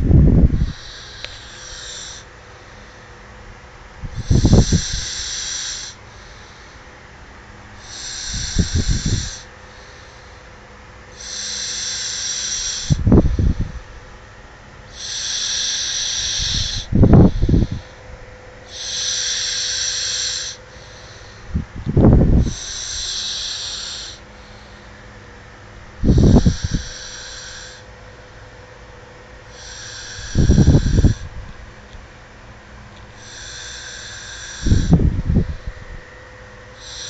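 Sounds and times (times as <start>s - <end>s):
loud low snore: 0.0s - 2.9s, 4.1s - 6.5s, 7.8s - 10.2s, 11.2s - 13.8s, 14.9s - 18.0s, 18.7s - 24.2s, 26.0s - 27.9s, 29.5s - 31.3s, 33.2s - 35.7s, 36.8s - 37.0s
hissing breath: 0.4s - 3.2s, 4.0s - 6.9s, 7.8s - 10.6s, 11.2s - 14.1s, 14.9s - 18.1s, 18.7s - 25.2s, 26.0s - 28.5s, 29.5s - 31.3s, 33.1s - 35.9s, 36.8s - 37.0s.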